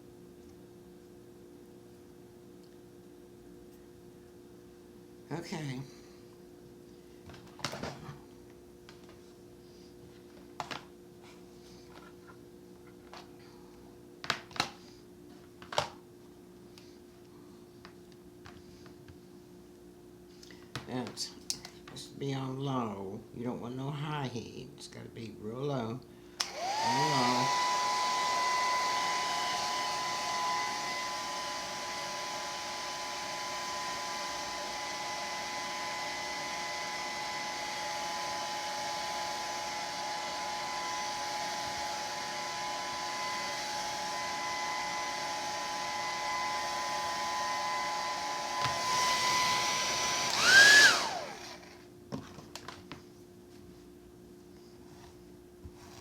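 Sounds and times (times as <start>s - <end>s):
hair dryer blowing: 26.4s - 51.8s.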